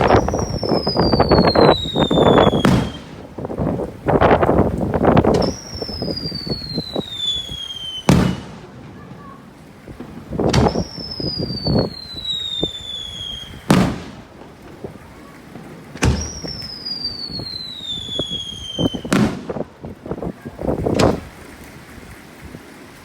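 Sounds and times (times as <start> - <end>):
firework whistle falling in pitch: 0.0 - 3.2, 5.4 - 8.4, 10.6 - 13.7, 16.0 - 19.2
crackling pops: 0.0 - 19.8, 20.8 - 21.3
firework loud bang: 0.0 - 20.0, 20.8 - 21.4
firework sharp crack: 0.0 - 20.2, 20.8 - 21.4.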